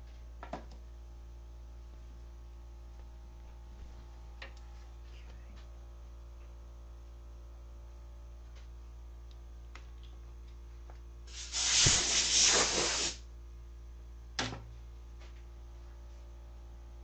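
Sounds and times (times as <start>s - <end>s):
pressurised spray hissing: 11.3s - 13.2s.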